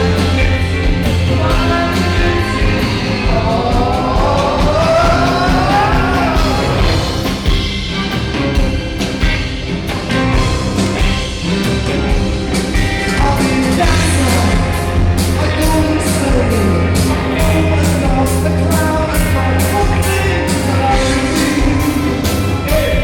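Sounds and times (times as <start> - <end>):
heavy bass: 0.0 - 23.0
live band music: 0.0 - 23.0
steady drumbeat: 0.0 - 23.0.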